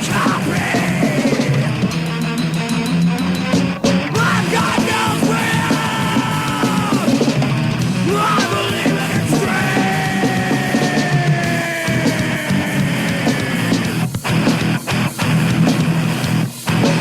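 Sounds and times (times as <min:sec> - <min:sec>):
shouted vocals: 0:00.0 - 0:01.8, 0:04.0 - 0:07.4, 0:08.0 - 0:13.9
thrash metal band playing: 0:00.0 - 0:17.0.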